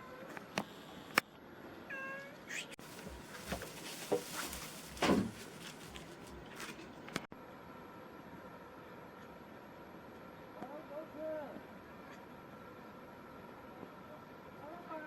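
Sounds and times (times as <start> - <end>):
rustling and knocks: 2.8 - 7.3.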